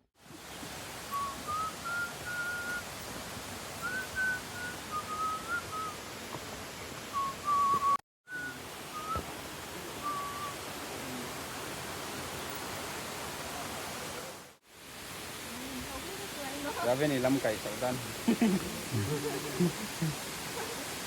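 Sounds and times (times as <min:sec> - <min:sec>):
steady hiss: 0:00.2 - 0:21.0
whistled notes: 0:01.1 - 0:02.8, 0:03.8 - 0:06.0, 0:07.1 - 0:09.2, 0:10.0 - 0:10.6.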